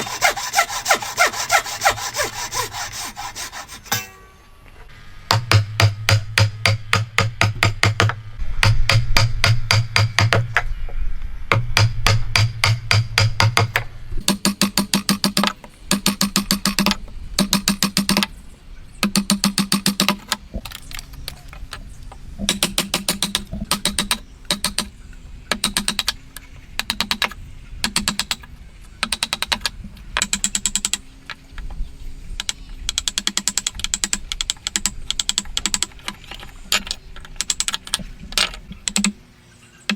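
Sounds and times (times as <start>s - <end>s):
rapid mechanical clicking: 32.4s - 36.1s, 36.7s - 39.2s.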